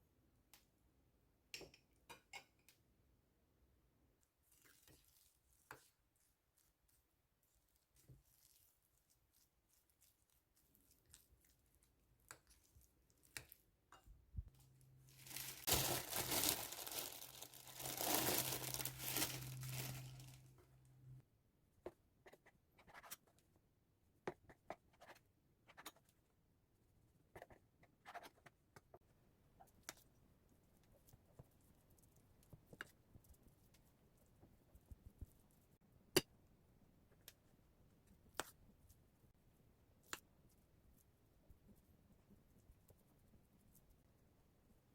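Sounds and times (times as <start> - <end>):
loud rustling: 15.2 - 20.4.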